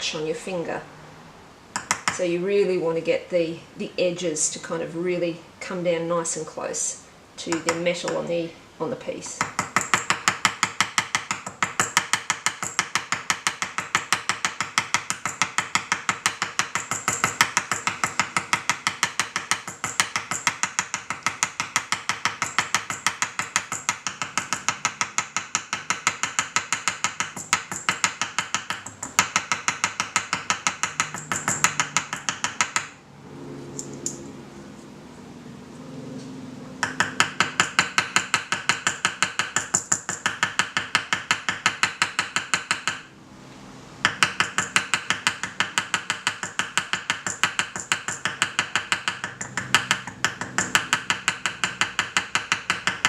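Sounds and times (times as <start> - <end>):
small hammer tapping metal rivet: 1.7 - 2.2, 9.4 - 32.9, 44.1 - 53.0.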